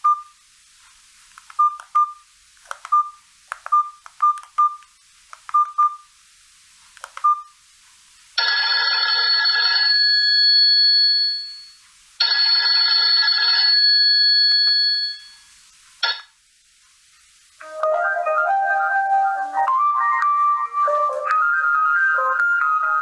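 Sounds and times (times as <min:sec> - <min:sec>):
bell-like phone ringtone: 0:08.4 - 0:15.4.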